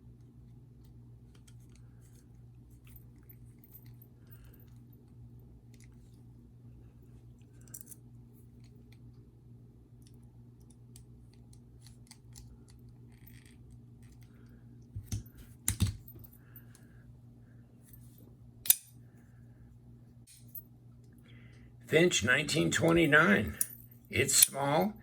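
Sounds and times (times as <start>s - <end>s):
faint steady hum: 0.0s - 25.0s
metal clicks from knife and tools: 18.7s - 18.9s.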